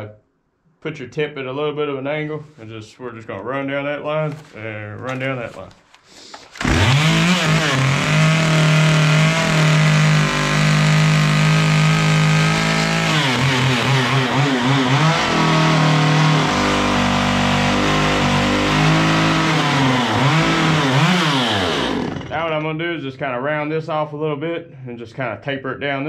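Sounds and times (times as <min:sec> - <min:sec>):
chainsaw cutting wood: 0:06.6 - 0:22.5.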